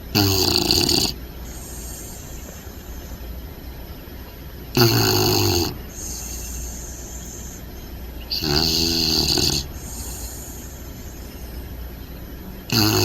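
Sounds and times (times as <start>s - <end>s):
puppy snoring: 0.1s - 3.2s, 4.8s - 11.8s, 12.7s - 13.0s
soft breaths: 1.3s - 3.8s, 4.9s - 12.4s.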